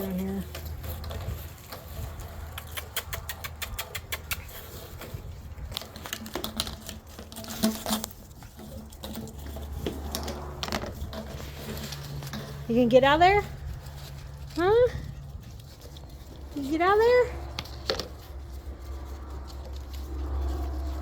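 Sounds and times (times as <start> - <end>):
puppy paws clicking and pattering: 0.0 - 21.0.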